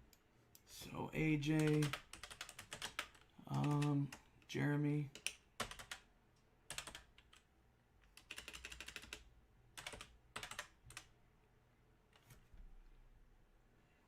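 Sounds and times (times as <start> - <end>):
computer keyboard typing: 1.5 - 4.3, 5.1 - 6.1, 6.7 - 7.4, 8.0 - 11.1.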